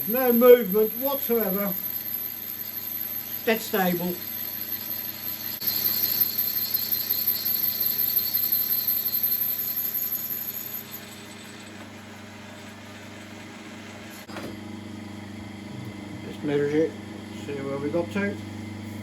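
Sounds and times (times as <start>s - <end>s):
high-pitched lathe cutting noise: 0.0s - 14.3s.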